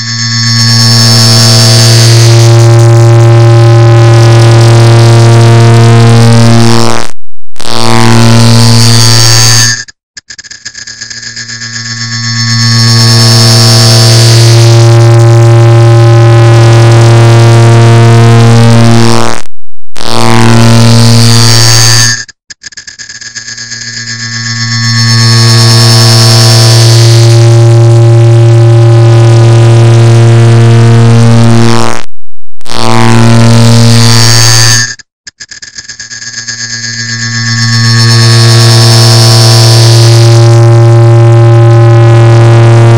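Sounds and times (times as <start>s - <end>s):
harsh droning buzz of ticks: 0.0s - 19.4s, 20.0s - 32.0s, 32.6s - 42.9s.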